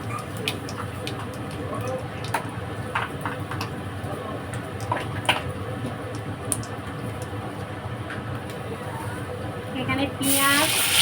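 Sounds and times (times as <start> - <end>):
food sizzling in hot oil: 10.2 - 11.0.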